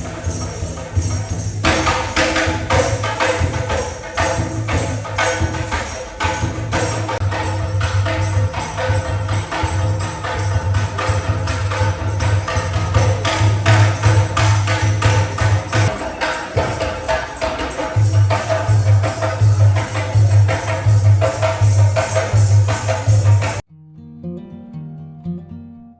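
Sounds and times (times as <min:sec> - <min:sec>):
folk dance music: 0:00.0 - 0:23.6
jingling tambourine percussion: 0:00.0 - 0:23.6
quiet acoustic guitar: 0:23.7 - 0:25.9.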